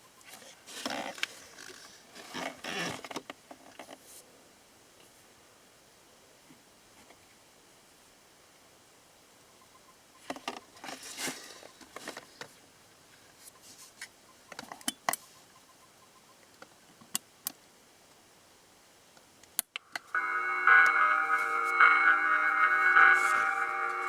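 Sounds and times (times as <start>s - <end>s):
church bell chime ringing: 20.1s - 24.0s.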